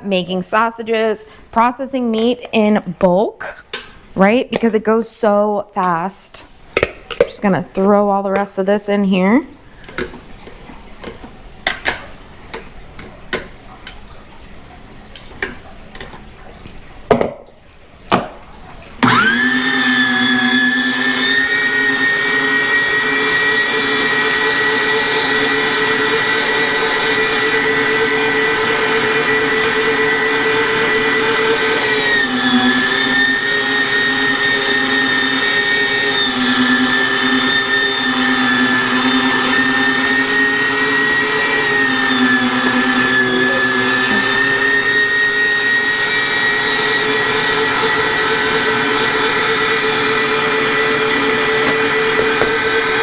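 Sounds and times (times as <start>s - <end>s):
electric meat grinder whining: 19.0s - 53.0s.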